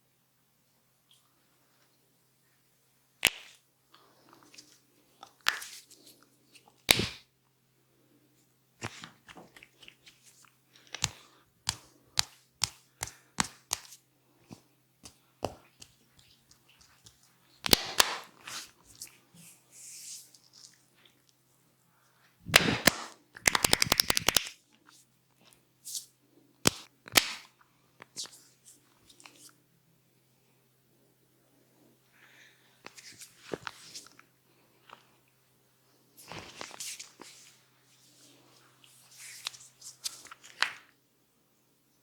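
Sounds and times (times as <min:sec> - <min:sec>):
hands slapping head and neck: 0:06.9 - 0:07.3, 0:10.9 - 0:18.6, 0:22.5 - 0:24.6, 0:26.6 - 0:27.5.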